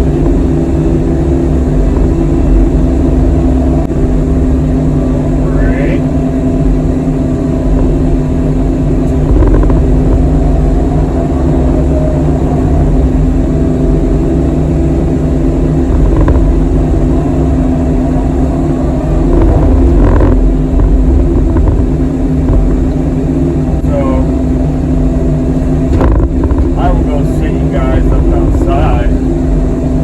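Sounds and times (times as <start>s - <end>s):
excavator diesel engine running: 0.0s - 30.0s.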